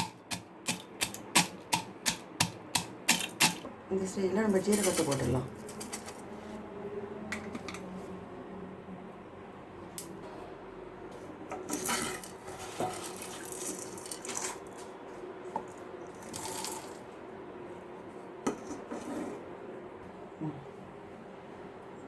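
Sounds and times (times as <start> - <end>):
spoon scraping a pan: 11.6 - 14.6
seeds rattling: 11.8 - 14.7, 16.2 - 17.0.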